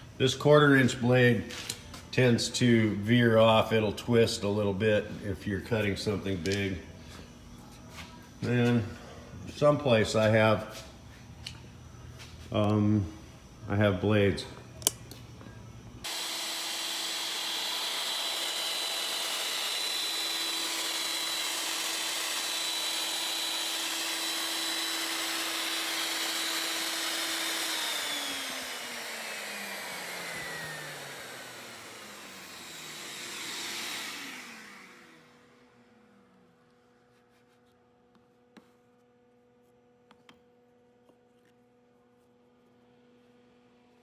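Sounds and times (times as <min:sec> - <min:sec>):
machine motor running and whining: 0:15.6 - 0:36.4
motor winding down: 0:16.0 - 0:35.8.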